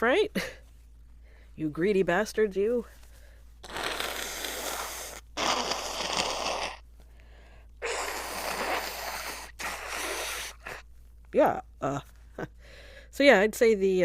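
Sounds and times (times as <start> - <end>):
woman breathing noisily: 1.2 - 1.6, 3.0 - 10.8, 12.6 - 13.2.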